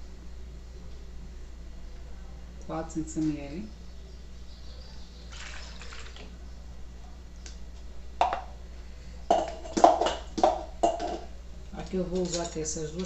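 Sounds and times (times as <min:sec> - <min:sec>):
utensils knocking and clinking: 0:09.3 - 0:11.3, 0:12.0 - 0:13.0
kitchen utensils clicking: 0:12.0 - 0:13.0.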